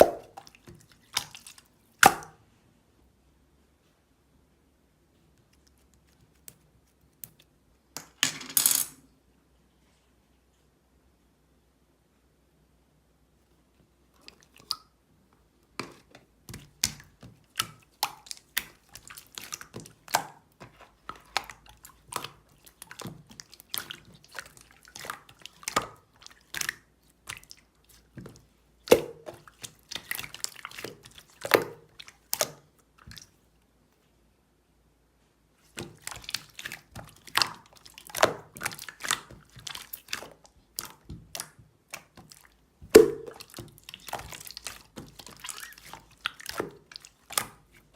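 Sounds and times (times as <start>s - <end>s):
short wet clicks and smacks: 14.2s - 15.0s, 15.9s - 33.4s, 35.7s - 47.8s.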